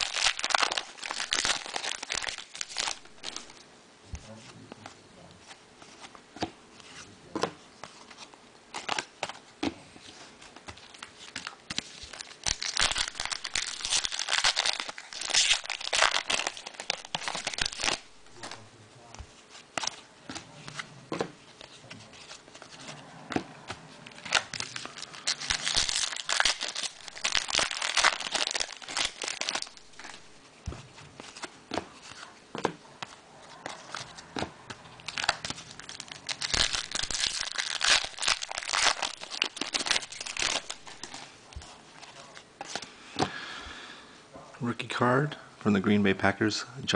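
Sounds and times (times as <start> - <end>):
wrappers crinkling and tearing: 0.0 - 3.6, 8.7 - 9.4, 10.8 - 18.7, 24.0 - 30.4, 33.6 - 42.8.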